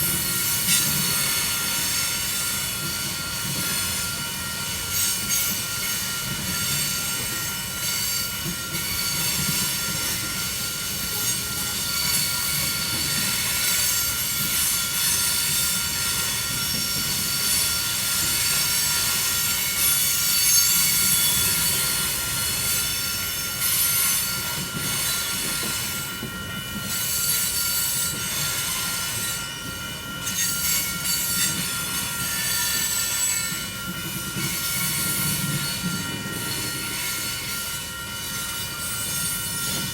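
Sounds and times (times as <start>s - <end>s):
steel wheels squealing on rails: 0.0s - 39.9s.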